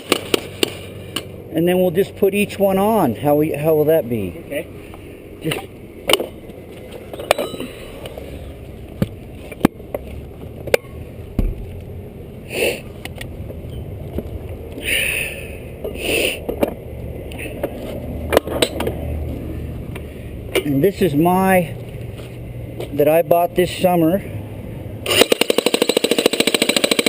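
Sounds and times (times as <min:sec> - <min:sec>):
steady low rumble: 0:00.0 - 0:25.1.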